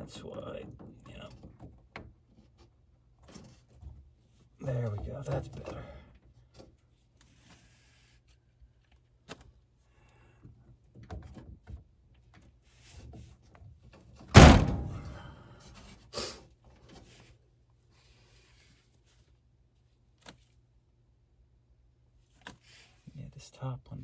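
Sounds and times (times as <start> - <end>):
loud ringing thump: 14.4 - 15.2
small clicks and handling noises: 20.2 - 20.6.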